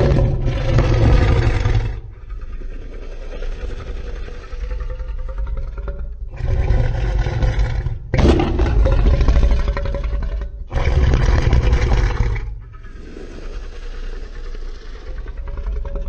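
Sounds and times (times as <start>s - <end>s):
monster roars: 0.0s - 5.4s.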